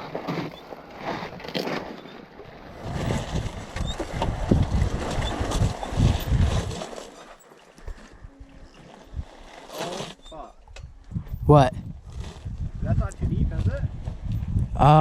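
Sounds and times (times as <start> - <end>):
low rumble over rough ground: 2.2 - 9.5, 10.6 - 15.0
wind buffeting microphone: 2.6 - 6.8, 10.7 - 15.0.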